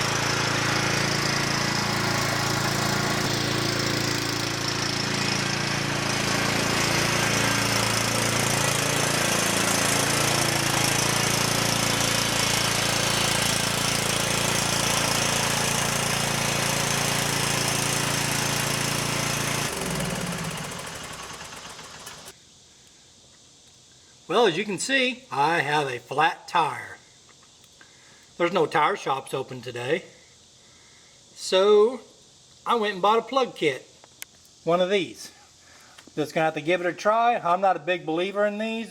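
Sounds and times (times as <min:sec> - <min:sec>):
riding mower engine running: 0:00.0 - 0:22.3.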